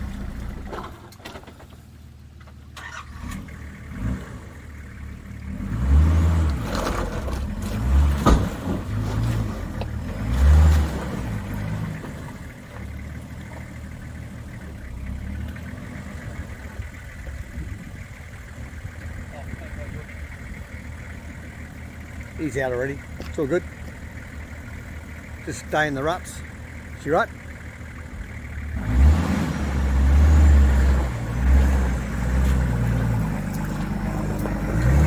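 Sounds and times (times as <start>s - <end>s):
engine revving: 2.8s - 13.1s, 13.9s - 35.0s.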